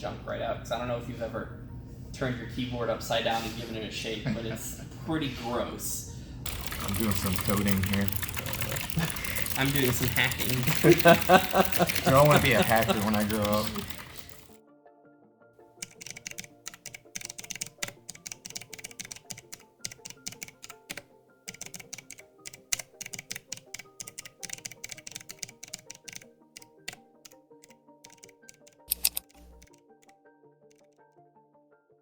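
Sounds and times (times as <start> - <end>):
background music: 0.0 - 32.0
fast typing on mechanical keyboard: 6.5 - 14.6, 15.8 - 29.8, 30.7 - 30.9.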